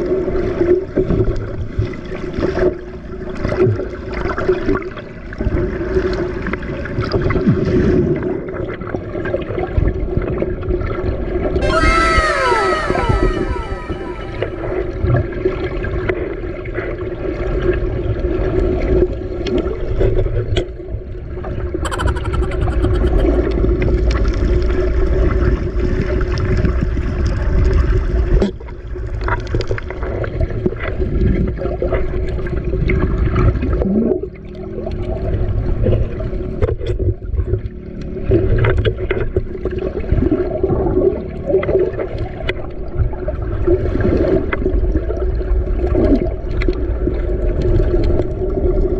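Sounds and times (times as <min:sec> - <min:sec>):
boat engine droning: 0:11.6 - 0:15.0.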